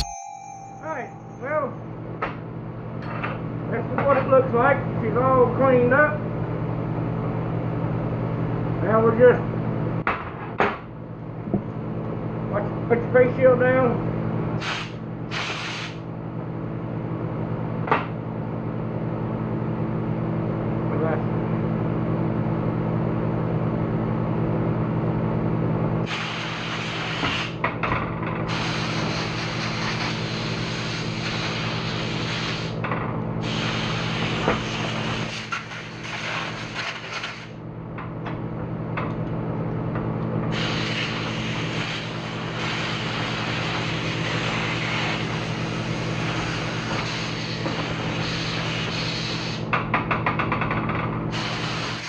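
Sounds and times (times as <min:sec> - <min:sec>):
harsh hiss of tool on metal: 0:40.5 - 0:45.5, 0:47.0 - 0:49.6, 0:51.3 - 0:52.0.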